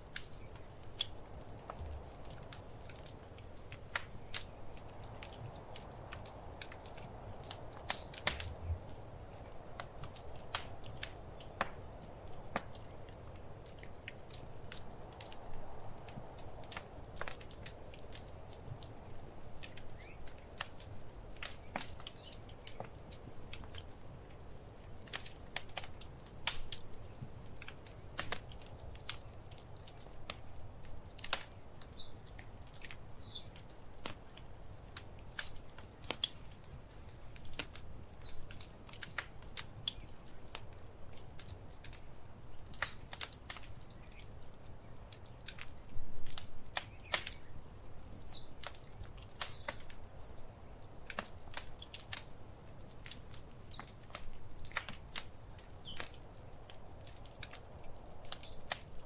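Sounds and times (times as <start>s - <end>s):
wood fire crackling: 0.0s - 59.0s.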